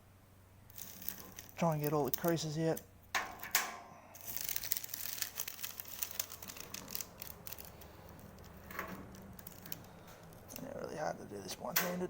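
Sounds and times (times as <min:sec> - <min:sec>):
baking paper crinkling: 0:00.7 - 0:02.8, 0:04.2 - 0:11.0.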